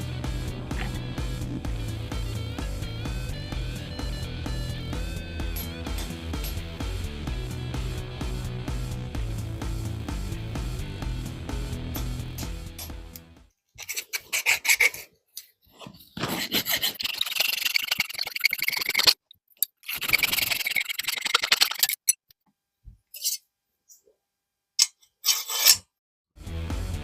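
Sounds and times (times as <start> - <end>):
rasping and scraping on steel: 13.8 - 15.1, 15.8 - 22.2, 23.1 - 23.4, 24.8 - 26.0.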